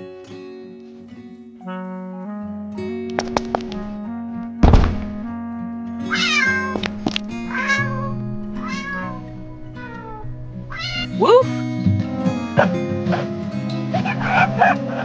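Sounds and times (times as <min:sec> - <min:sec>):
plucked guitar music: 0:00.0 - 0:15.0
cat meowing: 0:03.2 - 0:05.3, 0:06.1 - 0:11.4, 0:14.0 - 0:14.8
loud thump: 0:03.2 - 0:05.4.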